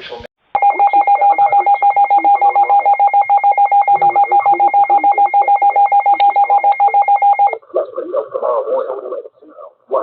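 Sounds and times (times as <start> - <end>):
rapid electronic alert beeps: 0.6 - 7.6.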